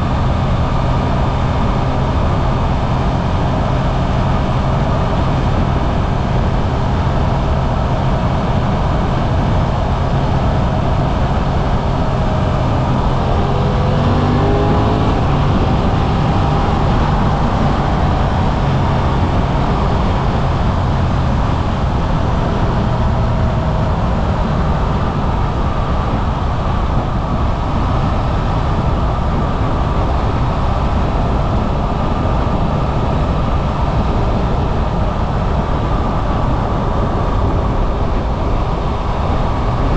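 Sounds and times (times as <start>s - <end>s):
motorcycle engine running: 0.0s - 39.9s
wind rush: 0.0s - 39.9s.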